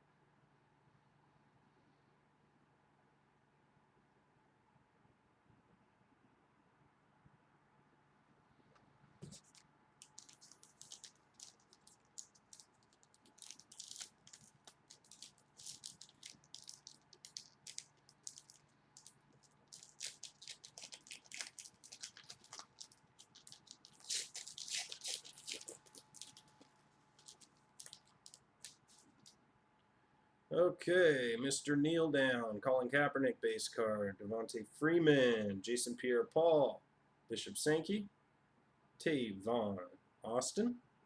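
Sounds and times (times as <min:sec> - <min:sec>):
faint steady hum: 0:00.0 - 0:41.0
light clicks and crinkles of handling: 0:08.7 - 0:29.9.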